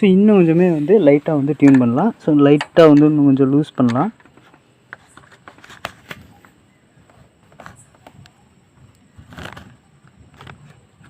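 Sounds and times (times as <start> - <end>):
small scraping sounds: 0.2 - 2.0, 4.2 - 11.0.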